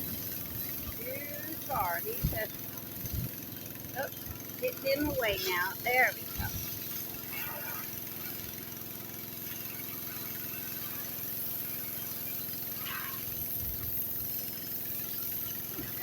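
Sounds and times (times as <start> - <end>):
pressure washer engine running: 0.0 - 16.0.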